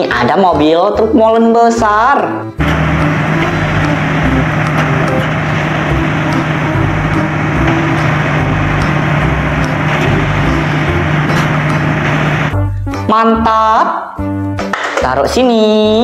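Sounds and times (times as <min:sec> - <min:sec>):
heavy truck engine running: 0:02.6 - 0:12.6.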